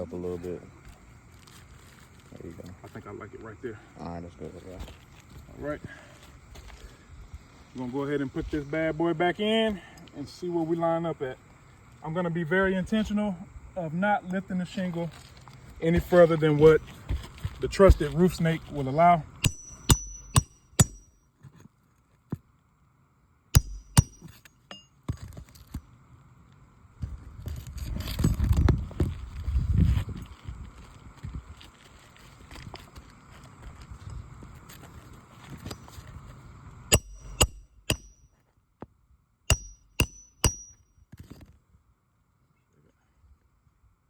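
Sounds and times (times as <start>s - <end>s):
hammer striking metal: 19.4s - 21.1s, 23.6s - 24.9s, 36.9s - 38.2s, 39.5s - 40.8s.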